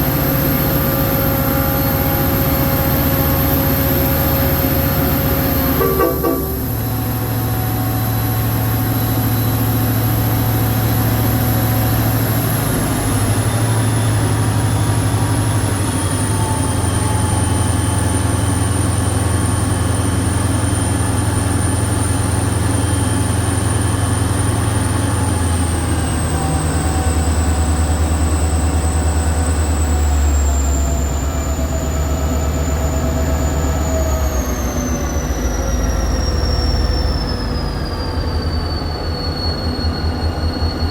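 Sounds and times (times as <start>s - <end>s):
diesel locomotive engine drone: 0.0s - 40.9s
high whine falling in steps: 5.4s - 7.1s.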